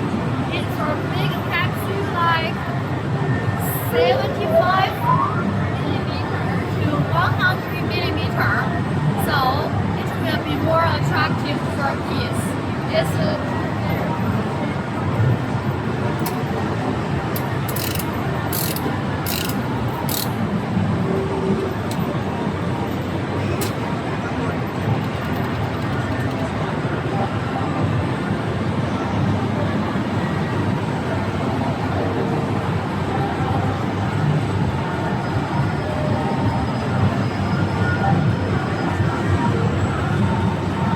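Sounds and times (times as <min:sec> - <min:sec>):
steady background din: 0:00.0 - 0:40.9
machine noise: 0:16.3 - 0:20.6
mechanical ratcheting and rattling: 0:17.4 - 0:20.4.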